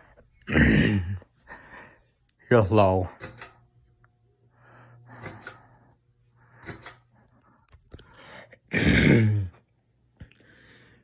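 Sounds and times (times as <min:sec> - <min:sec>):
person breathing: 0:00.0 - 0:02.2, 0:04.4 - 0:09.4, 0:10.2 - 0:11.0
ceiling fan humming: 0:00.0 - 0:11.0
person sneezing loudly: 0:08.7 - 0:09.6.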